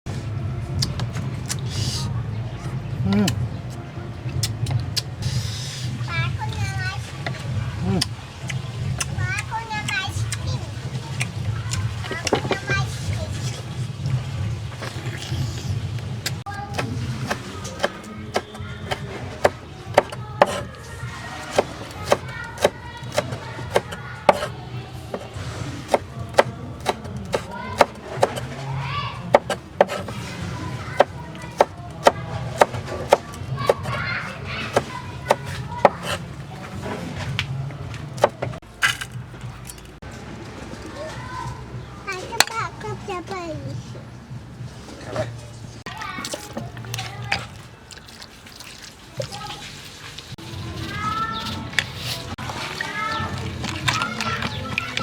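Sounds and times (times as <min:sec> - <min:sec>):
knife chopping on wooden board: 0:16.7 - 0:20.8, 0:21.4 - 0:28.6, 0:29.3 - 0:30.3, 0:31.0 - 0:34.0, 0:34.6 - 0:36.3.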